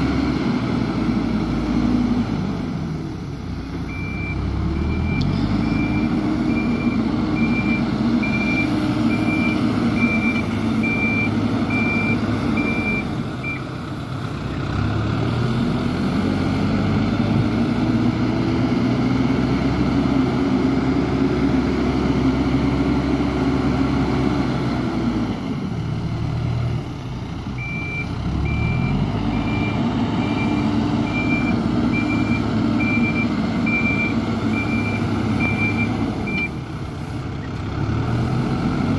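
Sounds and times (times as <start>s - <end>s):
heavy vehicle engine under load: 0.0s - 38.9s
reversing alarm beeping: 3.9s - 13.6s, 27.6s - 36.6s.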